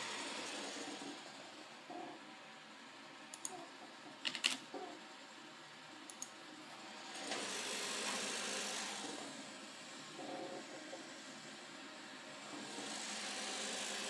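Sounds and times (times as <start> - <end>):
sharp clicks: 3.3 - 3.6, 6.1 - 6.3.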